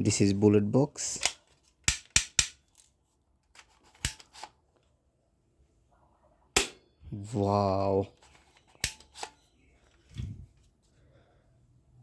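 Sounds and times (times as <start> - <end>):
plastic toy gun clicks: 1.2 - 2.8.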